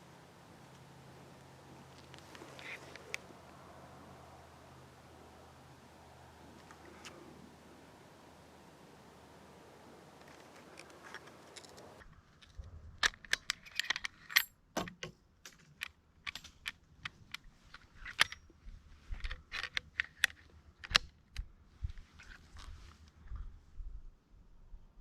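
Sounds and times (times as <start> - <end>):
sharp clicks and small rattles: 10.2 - 18.5, 19.1 - 21.5.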